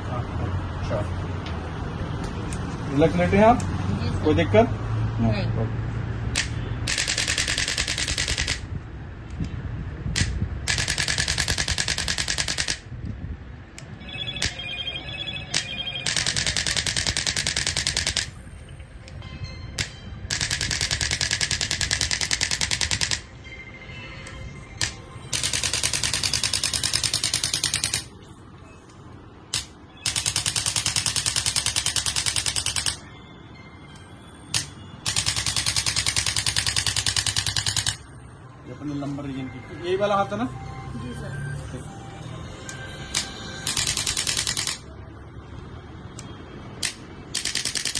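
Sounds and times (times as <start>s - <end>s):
telephone bell ringing: 14.0s - 16.6s.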